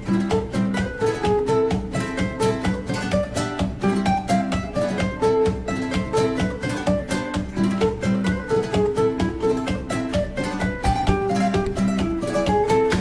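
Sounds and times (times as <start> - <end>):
quickly plucked guitar music: 0.0 - 13.0.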